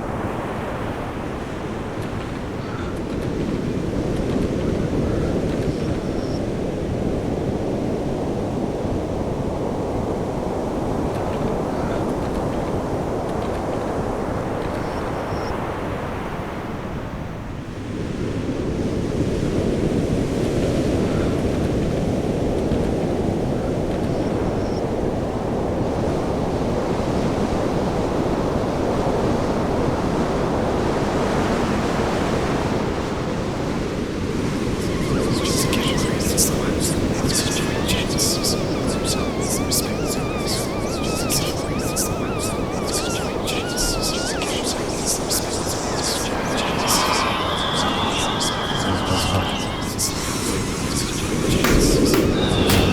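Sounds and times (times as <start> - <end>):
wind: 0.0 - 52.9
turbulent water rushing: 31.1 - 52.9
faint high whistle: 34.7 - 52.9.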